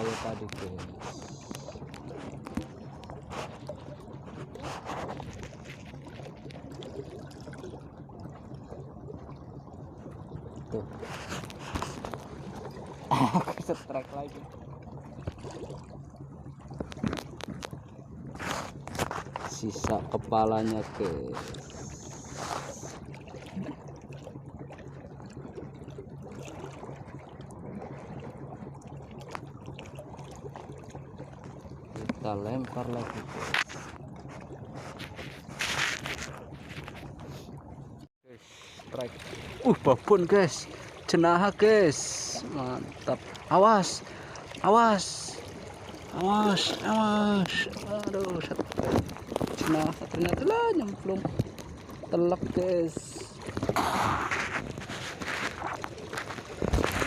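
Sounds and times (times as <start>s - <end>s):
boat engine humming: 0.0s - 57.0s
seawater sloshing: 0.0s - 57.0s
water lapping against rocks: 0.0s - 57.0s
low rumble: 53.3s - 55.9s.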